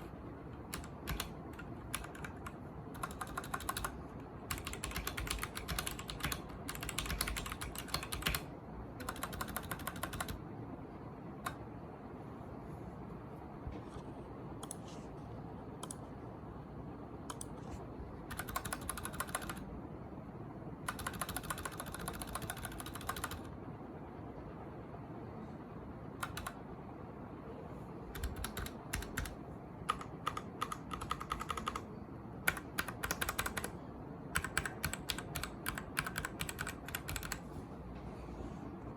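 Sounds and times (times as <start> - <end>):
mechanical keyboard typing: 0.0 - 10.4, 11.4 - 11.6, 15.8 - 16.0, 18.3 - 19.7, 20.8 - 23.5, 26.1 - 26.6, 28.1 - 37.5.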